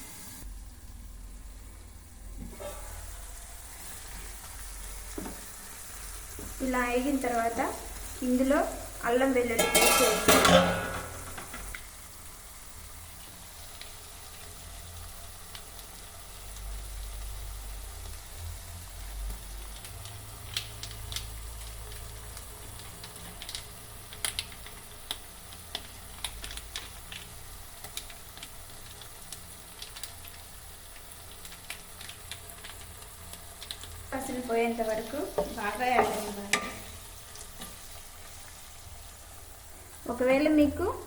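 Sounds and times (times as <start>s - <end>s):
food sizzling in oil: 0.0s - 41.0s
crackles and pops: 11.3s - 40.1s.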